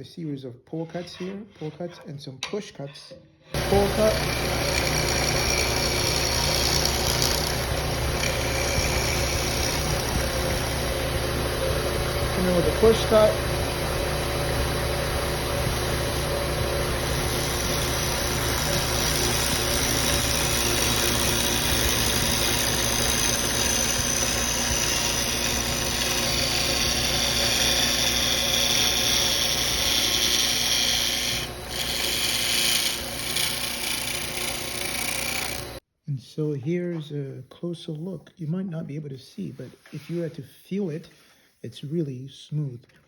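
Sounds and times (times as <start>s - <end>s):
tool shaving wood hiss: 3.5s - 35.8s
lathe motor hum: 3.6s - 35.8s.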